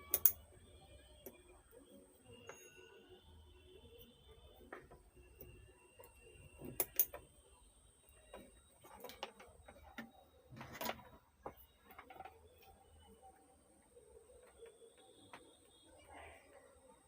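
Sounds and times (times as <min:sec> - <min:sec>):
hand tools clicking and tapping: 0:00.0 - 0:00.4, 0:06.6 - 0:07.3.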